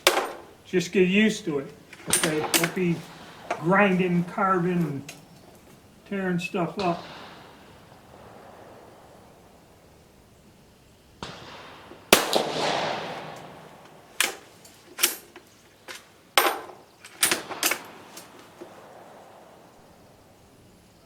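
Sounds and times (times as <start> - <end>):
rifle shot: 0.0 - 15.3, 16.4 - 21.0
faint crack: 0.0 - 21.0
rifle bolt metallic clacks: 1.6 - 5.8, 11.2 - 18.6.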